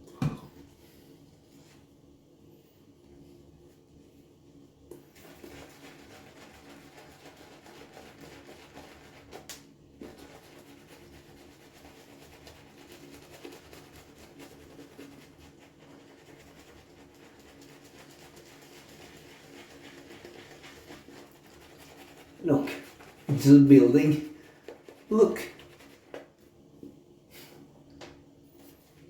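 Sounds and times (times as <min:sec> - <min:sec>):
shaving brush swishing lather: 0:05.1 - 0:26.4.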